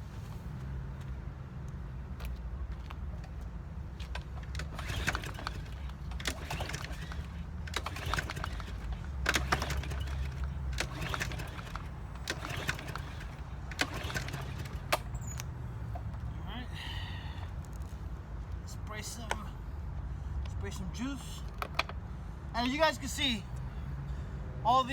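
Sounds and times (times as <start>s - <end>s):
metal and plastic parts clanking: 4.0s - 16.2s.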